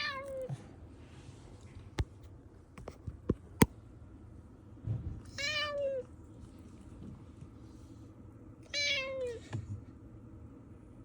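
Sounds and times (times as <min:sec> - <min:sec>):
cat meowing: 0:08.7 - 0:09.4.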